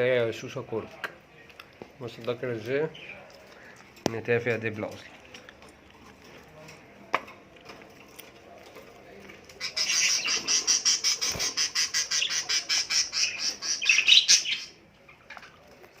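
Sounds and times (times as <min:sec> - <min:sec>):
budgerigars chirping: 0:09.6 - 0:14.8.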